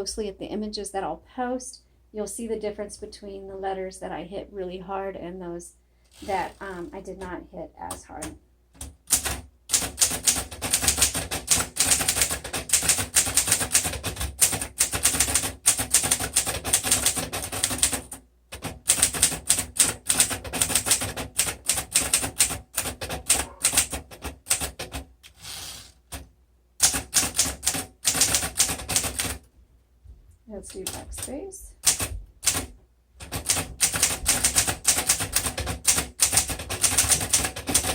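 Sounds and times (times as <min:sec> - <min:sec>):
manual typewriter keystrokes: 0:08.2 - 0:25.5, 0:26.1 - 0:29.4, 0:30.7 - 0:37.9.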